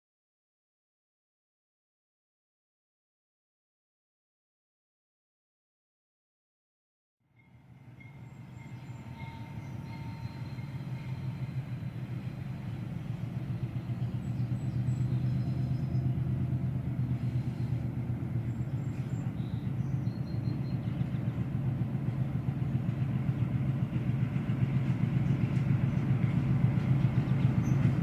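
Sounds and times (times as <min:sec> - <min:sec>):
train rumble: 0:07.4 - 0:28.0.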